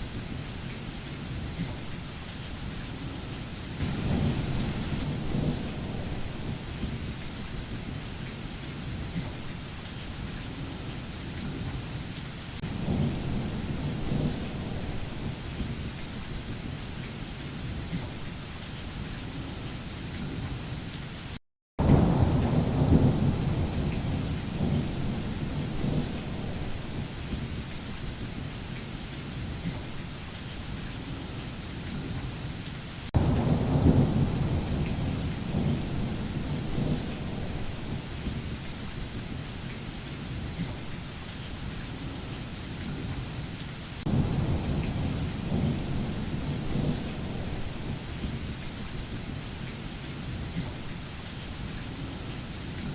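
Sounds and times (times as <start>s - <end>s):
steady rain: 0.0s - 52.9s
thunder rumbling: 3.8s - 7.2s, 12.6s - 15.9s, 21.8s - 28.2s, 33.2s - 38.7s, 44.0s - 49.4s.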